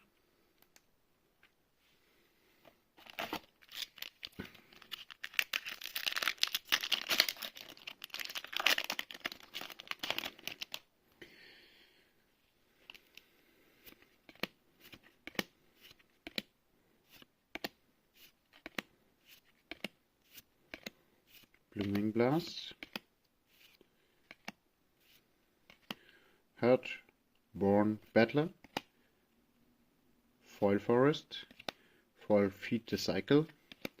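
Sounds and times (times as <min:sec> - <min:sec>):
foil wrapper tearing and crinkling: 0:03.0 - 0:10.9
cards clicking and snapping: 0:14.3 - 0:16.5, 0:18.5 - 0:18.9, 0:19.7 - 0:20.0, 0:20.7 - 0:20.9, 0:21.8 - 0:22.1, 0:22.8 - 0:23.1.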